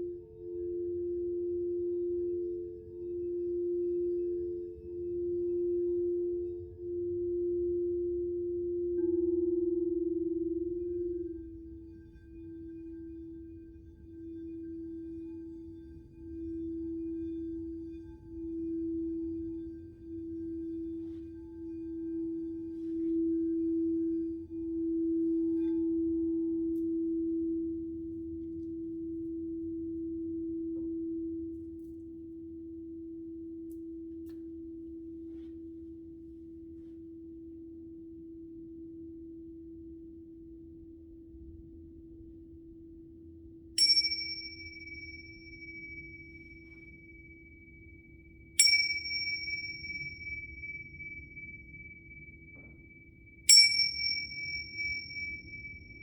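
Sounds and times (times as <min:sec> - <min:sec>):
crystal singing bowl tone: 0:00.0 - 0:56.0
tingsha cymbals ringing: 0:43.8 - 0:56.0.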